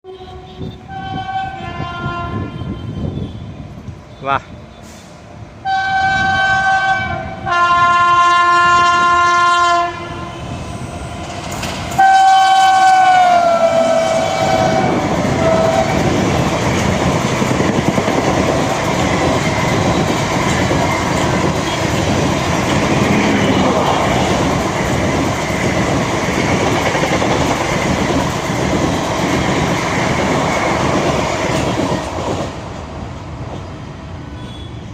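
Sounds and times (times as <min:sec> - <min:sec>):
locomotive horn blasts: 0:00.0 - 0:03.6, 0:05.6 - 0:10.5, 0:12.0 - 0:16.0
train wheels clickety-clack: 0:11.0 - 0:12.8, 0:14.5 - 0:33.8.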